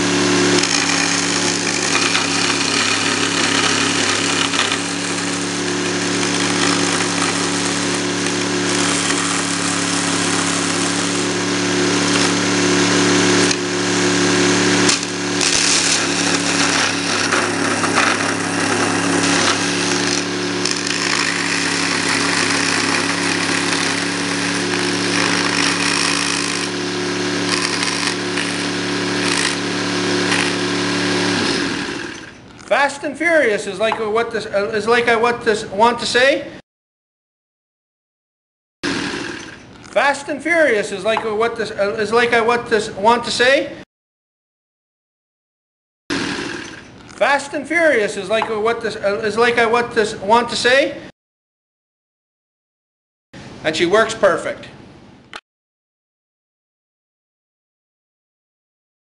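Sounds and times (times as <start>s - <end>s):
chainsaw cutting wood: 0.0s - 32.8s, 38.8s - 40.1s, 46.1s - 47.3s
electric motor hum: 0.0s - 32.8s, 38.8s - 40.0s, 46.1s - 47.3s.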